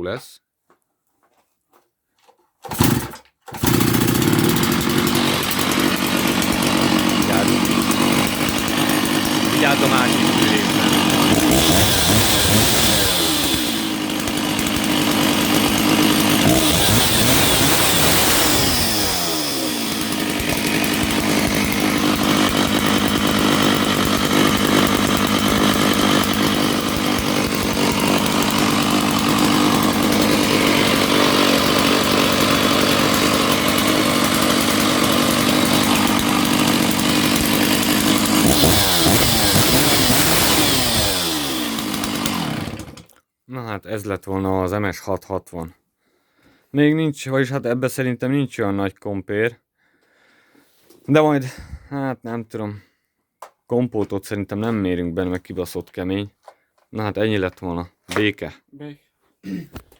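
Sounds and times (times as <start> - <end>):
chainsaw engine revving: 2.7 - 43.1.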